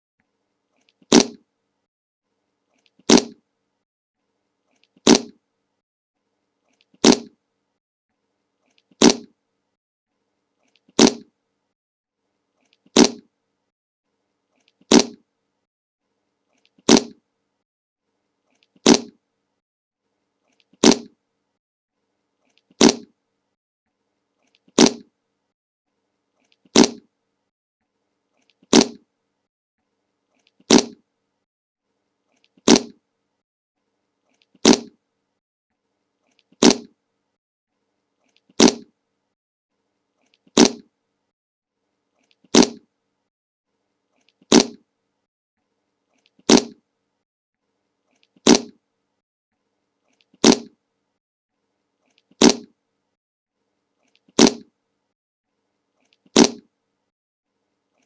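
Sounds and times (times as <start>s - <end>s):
short fart sound effect: 1.1s - 1.4s, 3.1s - 3.4s, 5.0s - 5.4s, 7.0s - 7.4s, 9.0s - 9.3s, 11.0s - 11.3s, 12.9s - 13.3s, 14.9s - 15.2s, 16.8s - 17.2s, 18.8s - 19.2s, 20.8s - 21.1s, 22.8s - 23.1s, 24.8s - 25.1s, 26.8s - 27.0s, 28.7s - 29.0s, 30.7s - 31.0s, 32.7s - 33.0s, 34.6s - 35.0s, 36.6s - 36.9s, 38.6s - 38.9s, 40.6s - 40.9s, 42.5s - 42.8s, 44.5s - 44.8s, 46.5s - 46.8s, 48.4s - 48.7s, 50.4s - 50.7s, 54.4s - 54.7s, 56.4s - 56.7s.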